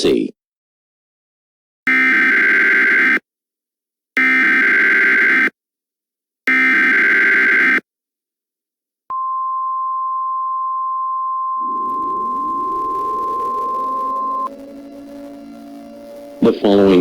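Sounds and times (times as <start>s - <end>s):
rising siren tone: 9.1s - 17.0s
steady attention tone: 9.1s - 17.0s
buzzy digital data burst: 11.6s - 17.0s.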